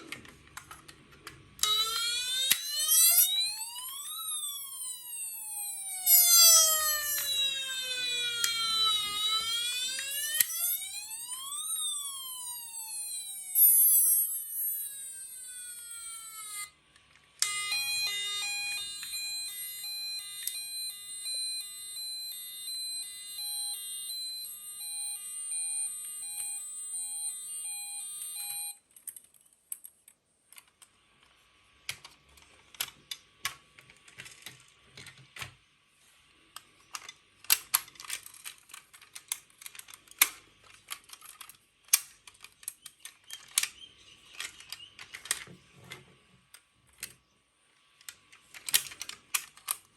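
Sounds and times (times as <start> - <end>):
plastic toy cars clicking: 0.0 - 2.7, 28.4 - 35.6, 36.5 - 49.9
toy electronic beeping tones: 1.6 - 16.7, 17.4 - 28.8.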